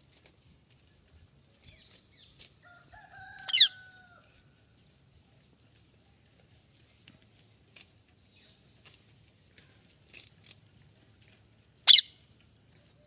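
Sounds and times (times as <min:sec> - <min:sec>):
parakeet squawk: 0:03.5 - 0:03.7, 0:11.9 - 0:12.1.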